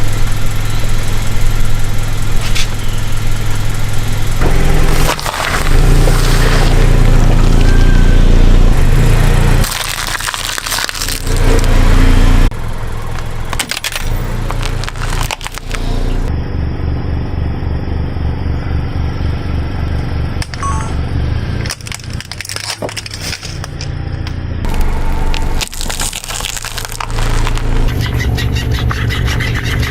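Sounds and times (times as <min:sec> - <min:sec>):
car engine low rumble: 0:00.0 - 0:29.9
tyres crushing objects: 0:04.8 - 0:06.9, 0:09.6 - 0:11.7, 0:13.1 - 0:16.1, 0:21.7 - 0:23.9, 0:24.7 - 0:28.0.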